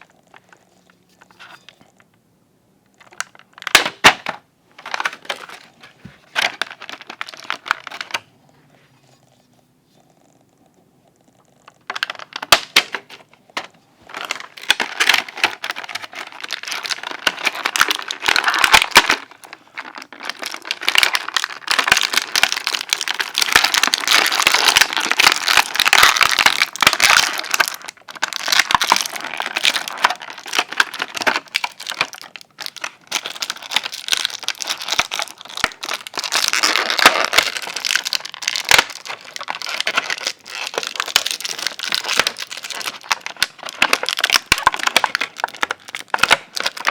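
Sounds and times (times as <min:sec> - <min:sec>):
packaging crinkling: 0:03.0 - 0:08.3, 0:11.8 - 0:46.9.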